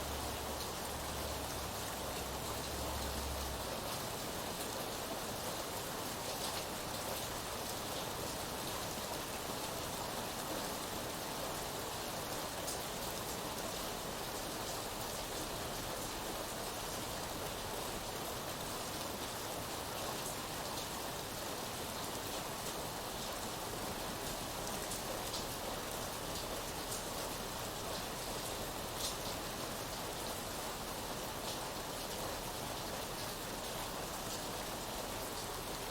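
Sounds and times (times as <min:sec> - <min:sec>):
steady rainfall hiss: 0:00.0 - 0:35.9.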